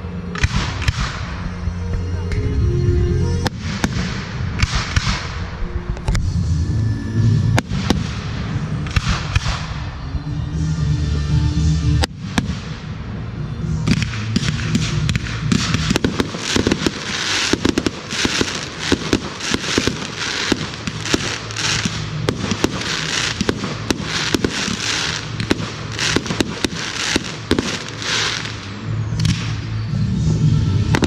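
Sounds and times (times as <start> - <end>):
fireworks bangs: 0.0 - 1.7, 3.4 - 5.6, 7.6 - 9.9, 12.0 - 13.1, 13.8 - 29.8
fireworks hissing and crackling: 13.8 - 29.7.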